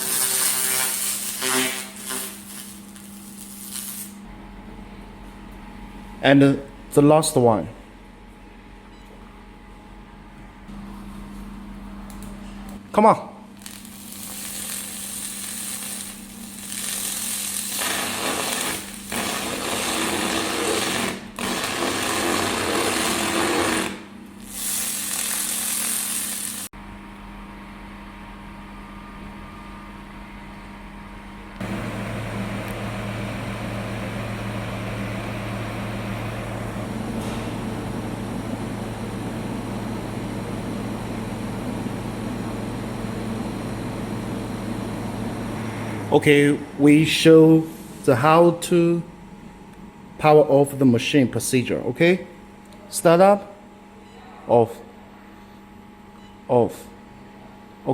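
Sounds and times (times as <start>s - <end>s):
laser buzzing crackle: 0.0s - 4.2s, 13.5s - 26.7s
steady machine hum: 0.0s - 54.1s.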